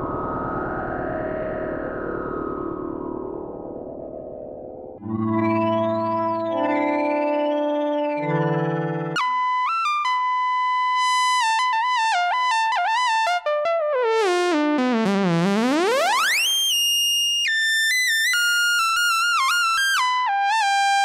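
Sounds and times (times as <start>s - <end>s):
synthesizer lead melody: 5.0s - 21.0s.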